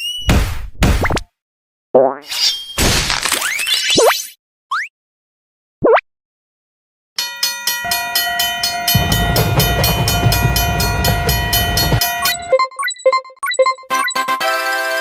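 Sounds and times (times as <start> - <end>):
railroad crossing bell ringing: 7.2 - 12.7
low rumble of passing train: 7.9 - 12.5.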